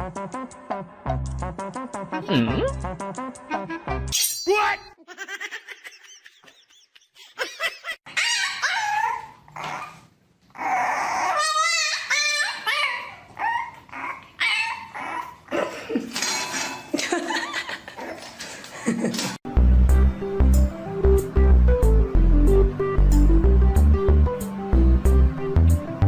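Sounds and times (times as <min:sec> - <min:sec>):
dog whining and yipping: 0:08.1 - 0:15.5.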